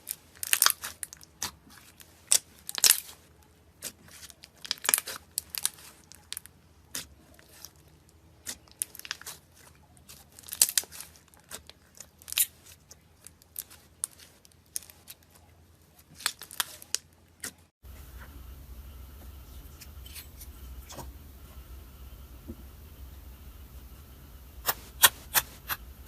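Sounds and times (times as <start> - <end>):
slime crackling and popping: 0.3 - 3.2, 3.8 - 7.7, 8.4 - 15.3, 16.0 - 17.6.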